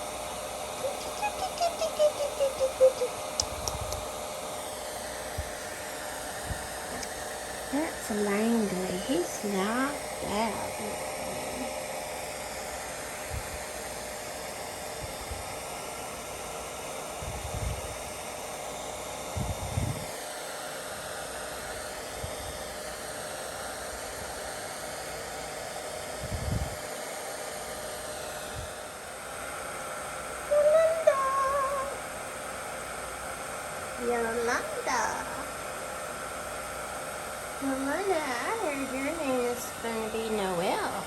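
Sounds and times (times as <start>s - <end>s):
hair dryer blowing: 0.0s - 41.0s
kitten mewing: 0.8s - 3.8s.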